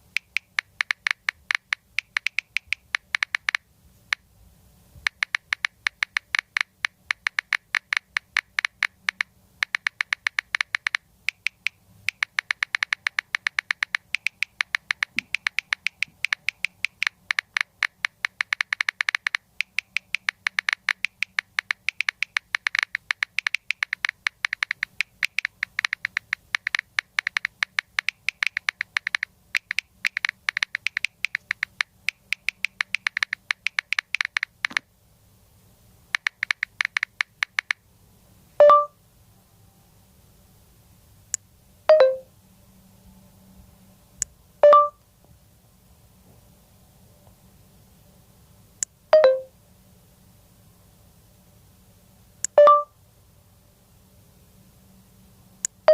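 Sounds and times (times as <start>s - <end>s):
phone keyboard clicks: 0.1s - 4.2s, 5.1s - 34.8s, 36.2s - 37.8s.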